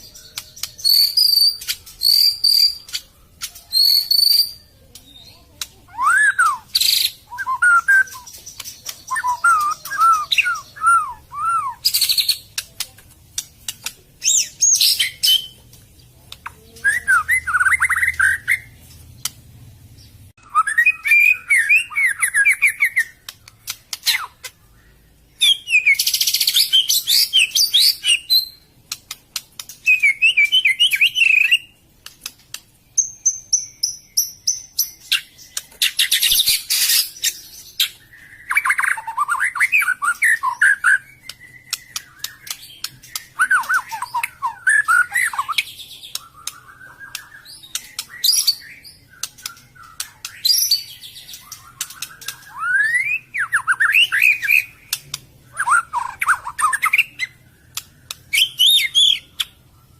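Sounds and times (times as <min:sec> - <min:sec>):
bird singing whistled song: 0:00.0 - 0:12.6, 0:14.2 - 0:15.6, 0:16.7 - 0:18.8, 0:20.4 - 0:28.7, 0:29.6 - 0:31.8, 0:32.9 - 0:59.9
bird clicks: 0:00.4 - 0:03.6, 0:11.8 - 0:14.0, 0:15.7 - 0:16.6, 0:19.2 - 0:19.4, 0:23.2 - 0:24.6, 0:28.8 - 0:29.9, 0:32.0 - 0:32.8, 0:41.2 - 0:44.4, 0:45.2 - 0:48.6, 0:49.2 - 0:52.6, 0:57.7 - 0:58.4.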